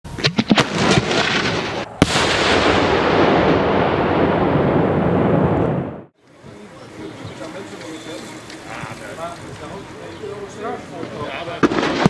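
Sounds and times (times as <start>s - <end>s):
firework bang: 0.2s - 6.1s, 11.6s - 12.0s
firework crackle: 11.1s - 12.0s.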